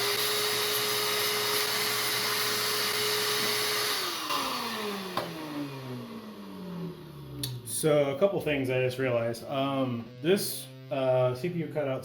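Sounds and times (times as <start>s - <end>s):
vacuum cleaner running: 0.0s - 7.4s, 9.1s - 12.0s.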